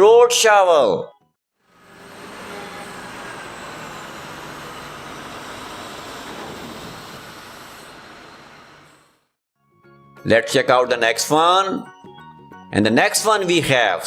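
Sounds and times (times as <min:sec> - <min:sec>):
heavy machine engine rumbling: 0:01.7 - 0:09.2.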